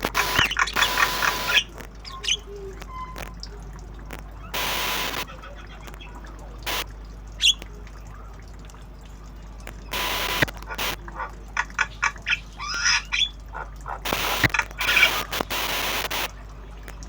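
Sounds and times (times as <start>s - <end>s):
myna calling: 0.0s - 8.3s, 9.8s - 16.3s
bursts of rushing noise: 14.0s - 16.3s.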